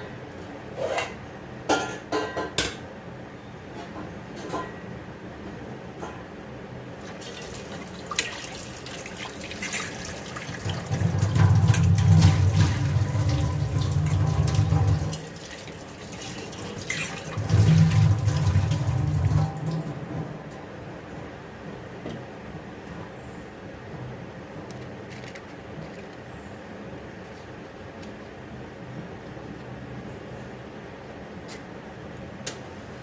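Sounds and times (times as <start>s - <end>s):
tap running into a sink: 7.2s - 20.0s.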